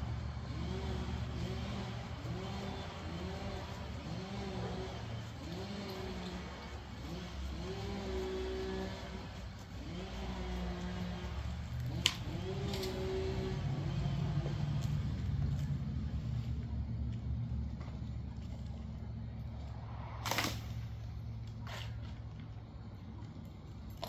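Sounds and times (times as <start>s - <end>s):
chainsaw engine revving: 0.0s - 16.4s.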